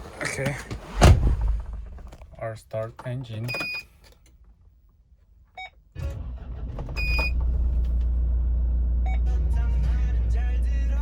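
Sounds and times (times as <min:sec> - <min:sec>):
dashboard beep: 0:03.5 - 0:03.8
engine cranking and idling: 0:06.0 - 0:11.0.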